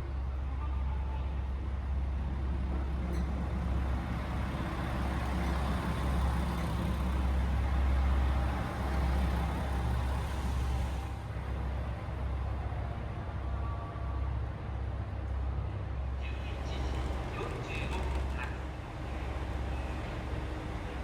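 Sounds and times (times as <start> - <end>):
diesel engine rumbling: 3.3 - 12.2.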